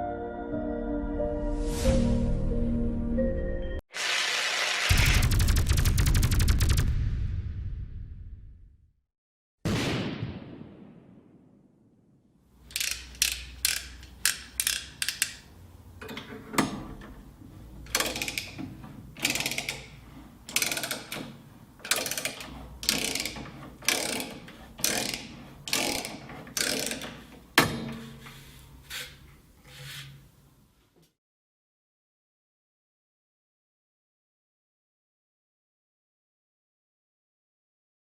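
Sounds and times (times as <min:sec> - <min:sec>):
hand tool rasping strokes: 0:21.9 - 0:27.4, 0:28.0 - 0:30.2.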